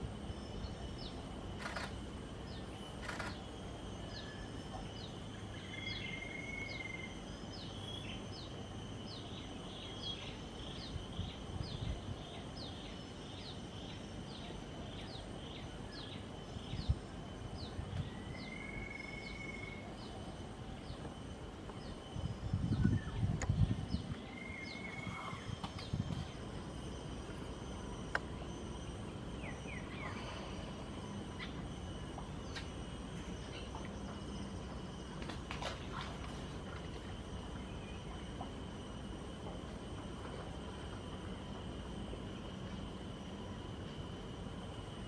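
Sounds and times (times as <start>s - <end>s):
high insect hum: 0.0s - 45.0s
low wind rumble: 7.5s - 14.2s, 15.4s - 45.0s.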